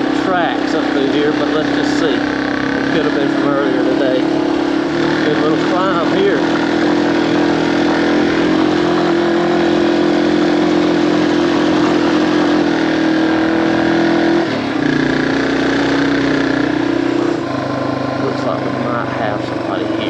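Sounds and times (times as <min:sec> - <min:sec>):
motorcycle engine pulling uphill: 0:00.0 - 0:20.0.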